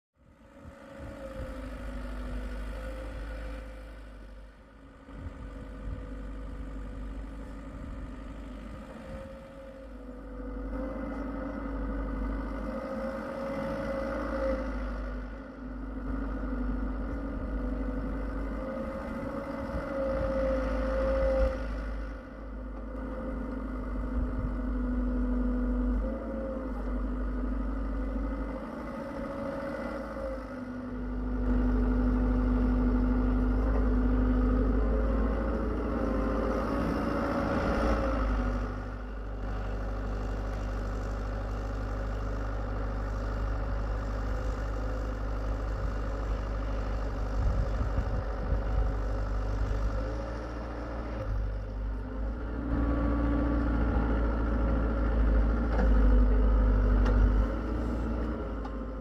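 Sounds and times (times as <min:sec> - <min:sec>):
excavator engine and hydraulics: 0:00.2 - 0:59.0.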